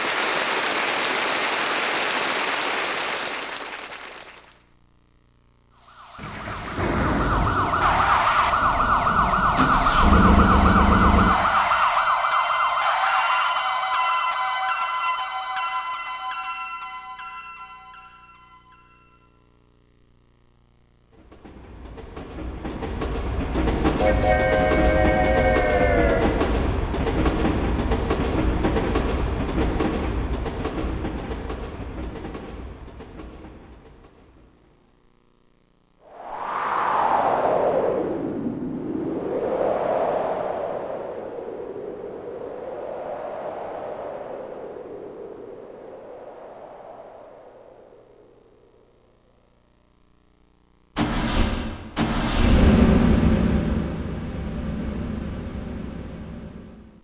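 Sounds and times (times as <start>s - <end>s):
synthesized siren wail: 5.8s - 15.4s, 24.0s - 26.6s
train rumble: 21.2s - 34.2s
train wheels clickety-clack: 21.3s - 24.0s, 26.2s - 33.8s
chime-like tones: 24.0s - 26.3s.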